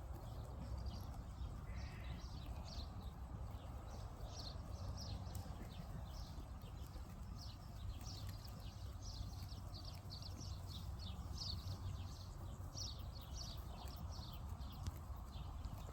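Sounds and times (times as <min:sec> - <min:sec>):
small birds chirping: 0:00.0 - 0:15.9.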